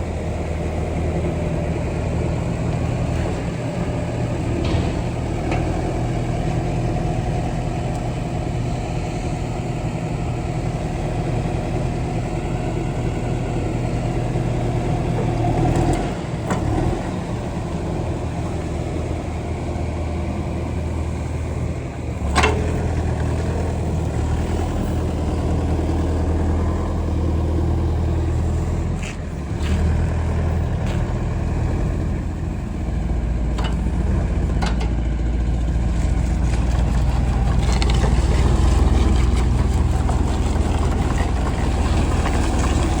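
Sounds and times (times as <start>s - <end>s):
diesel engine running: 0.0s - 43.0s
sharp knocks: 4.6s - 6.6s.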